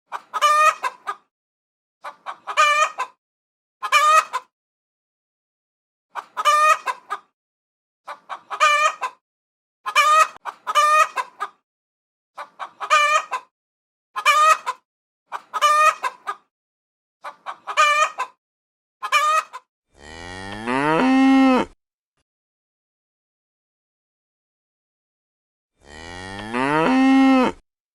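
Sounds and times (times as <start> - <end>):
chicken clucking: 0.1 - 1.3, 2.0 - 3.2, 3.8 - 4.5, 6.1 - 7.3, 8.0 - 9.2, 9.8 - 11.6, 12.4 - 13.5, 14.2 - 16.5, 17.2 - 18.4, 19.0 - 19.7
cow mooing: 20.0 - 21.8, 25.8 - 27.6.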